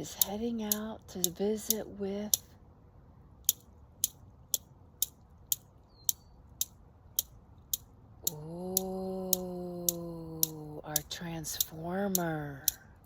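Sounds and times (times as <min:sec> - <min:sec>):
steady ticking: 0:00.0 - 0:02.6, 0:03.3 - 0:13.0
faint high chirp: 0:05.8 - 0:06.5.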